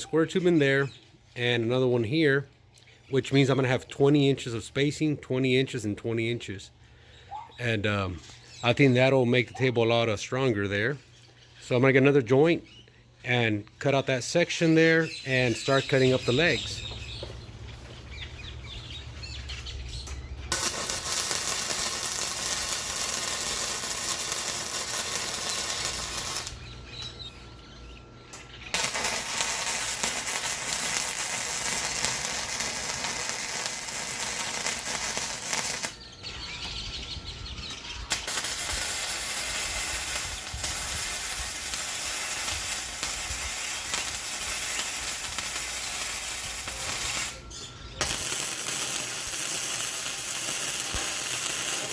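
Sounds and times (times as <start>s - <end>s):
welding crackling sizzle: 20.0s - 26.7s, 28.3s - 36.0s, 38.0s - 51.9s.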